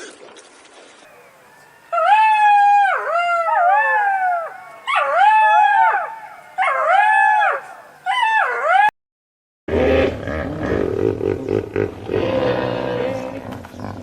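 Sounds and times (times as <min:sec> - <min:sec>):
animal howling calls: 0:01.1 - 0:08.9.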